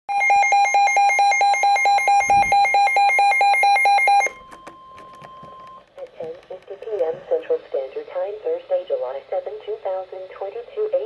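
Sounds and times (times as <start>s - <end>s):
weather radio alarm beeping: 0.1s - 7.4s
steady warning tone: 0.1s - 7.6s.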